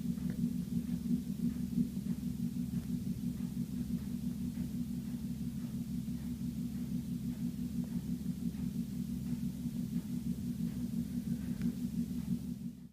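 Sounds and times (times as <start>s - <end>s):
drilling-like rumble through wall: 0.0s - 12.9s.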